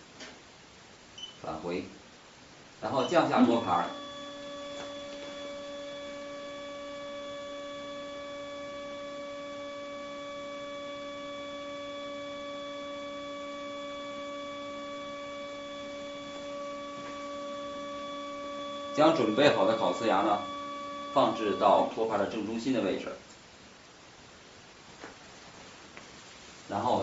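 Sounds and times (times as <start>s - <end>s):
electric motor whine: 3.0s - 22.6s.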